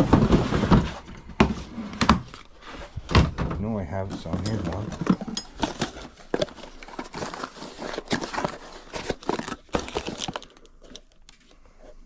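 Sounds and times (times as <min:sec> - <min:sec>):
clicks and knocks of handled items: 0:03.1 - 0:11.6
plastic packaging crinkling: 0:04.1 - 0:11.6.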